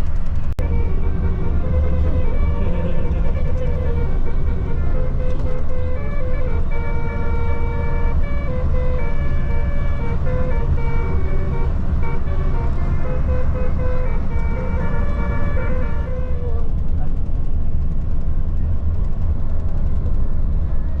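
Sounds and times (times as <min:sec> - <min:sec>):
steady low rumble: 0:00.0 - 0:21.0
bus horn playing a melody: 0:00.6 - 0:17.3.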